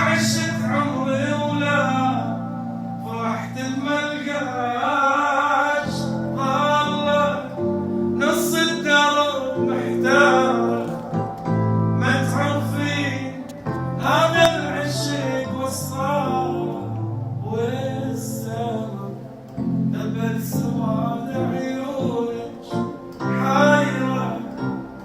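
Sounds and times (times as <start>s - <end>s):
man singing: 0.0s - 25.0s
instrumental accompaniment: 5.8s - 25.0s.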